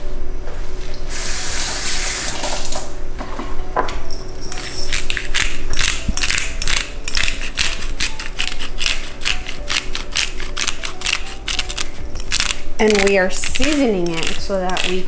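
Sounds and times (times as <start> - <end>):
pepper grinder grinding: 4.0 - 15.0.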